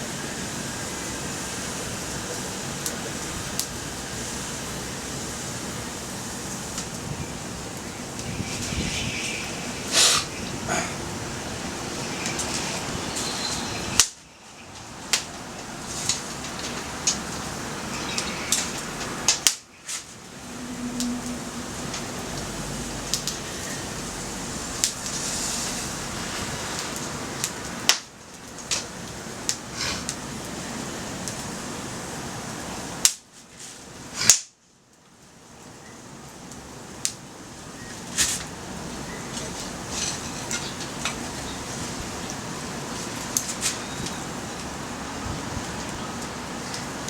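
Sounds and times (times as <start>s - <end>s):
steady rushing noise: 0.0s - 29.4s
fire popping: 0.0s - 47.0s
wood fire crackling: 0.0s - 47.0s.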